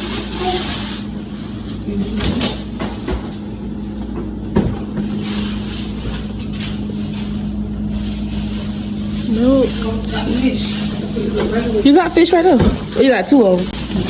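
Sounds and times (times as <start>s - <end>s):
grocery packages knocking and rustling: 4.1s - 7.6s, 12.3s - 14.0s.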